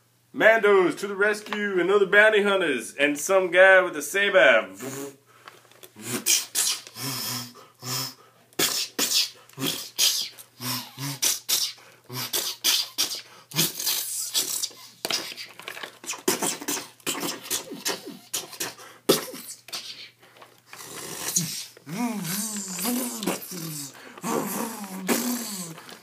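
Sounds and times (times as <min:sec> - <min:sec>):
person making mouth sound effects: 0:04.8 - 0:05.2, 0:06.0 - 0:26.0.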